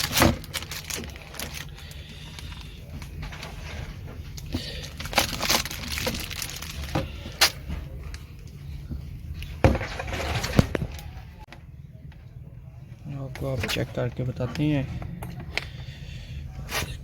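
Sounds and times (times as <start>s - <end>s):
packaging crinkling: 0.0s - 8.2s.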